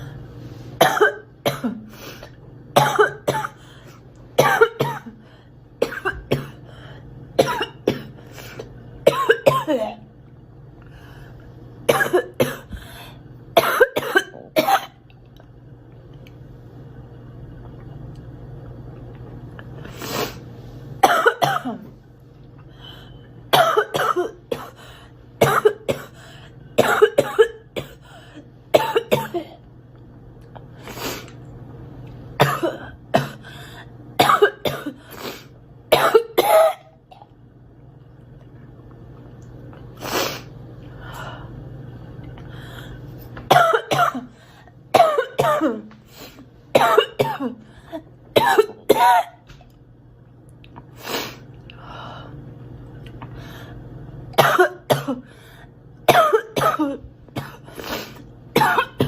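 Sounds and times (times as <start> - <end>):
girl coughing: 0.8 - 1.9, 2.8 - 3.6, 4.4 - 5.2, 5.8 - 6.6, 7.4 - 8.2, 9.0 - 10.0, 11.9 - 12.8, 13.6 - 15.0, 21.0 - 21.9, 23.5 - 24.8, 25.4 - 26.2, 26.8 - 28.1, 28.7 - 29.6, 32.4 - 33.5, 34.2 - 35.0, 35.9 - 37.0, 43.5 - 44.4, 45.0 - 46.0, 46.8 - 49.4, 54.4 - 55.3, 56.1 - 57.7, 58.6 - 59.0.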